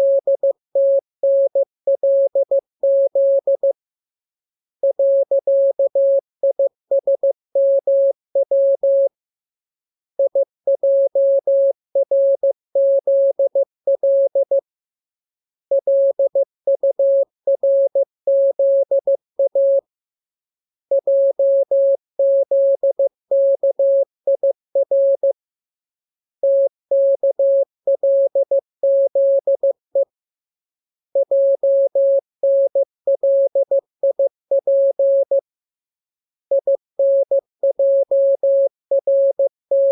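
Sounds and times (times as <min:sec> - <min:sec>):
morse code tone: 0:36.5 - 0:39.9.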